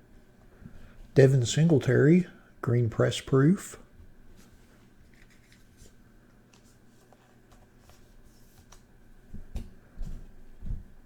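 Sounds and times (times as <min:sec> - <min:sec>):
cards clicking and rustling: 0:05.0 - 0:08.9.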